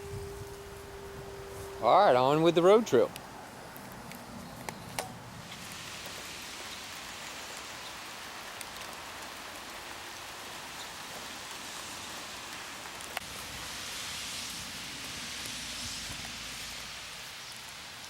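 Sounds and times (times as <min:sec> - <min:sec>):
steady rain falling: 0:00.0 - 0:18.0.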